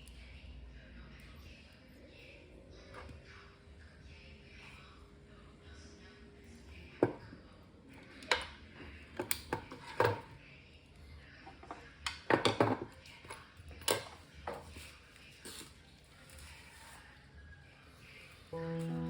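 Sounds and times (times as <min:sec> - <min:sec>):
faint low hum: 0:13.0 - 0:19.0.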